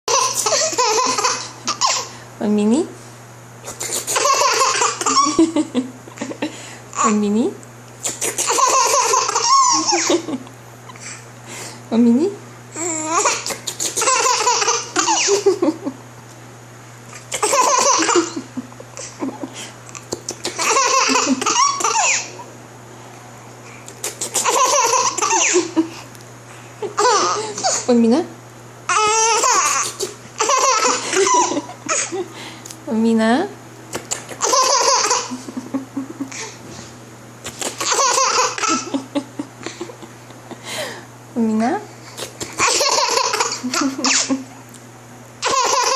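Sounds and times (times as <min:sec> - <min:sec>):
baby laughing: 0:00.1 - 0:02.2, 0:03.7 - 0:07.1, 0:08.0 - 0:11.2, 0:12.8 - 0:16.0, 0:17.1 - 0:22.4, 0:23.9 - 0:26.0, 0:26.8 - 0:27.9, 0:28.9 - 0:32.3, 0:33.9 - 0:36.6, 0:37.4 - 0:40.1, 0:42.2 - 0:44.5, 0:45.4 - 0:45.9.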